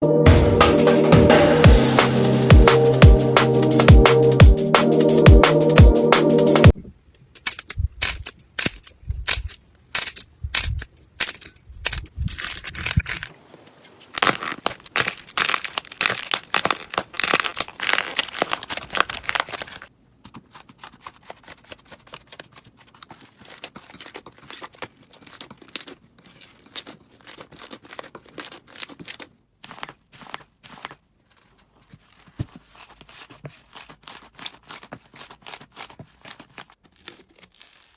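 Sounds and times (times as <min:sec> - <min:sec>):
slime crackling and popping: 0:14.1 - 0:19.9.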